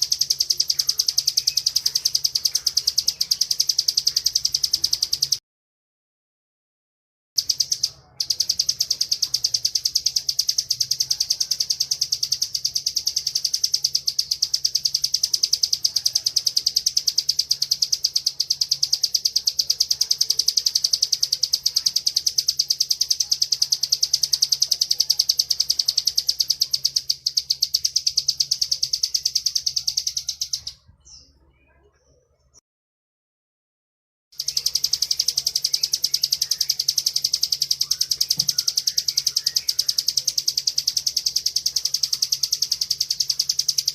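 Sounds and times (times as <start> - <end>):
bird buzzing trill song: 0.0 - 5.4, 34.4 - 43.9.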